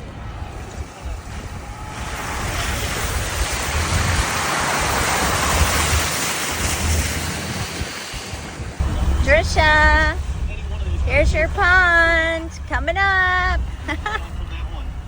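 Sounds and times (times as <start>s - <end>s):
low rumble of vehicle: 0.0s - 15.0s
rushing hiss of wet tyres: 0.7s - 8.8s.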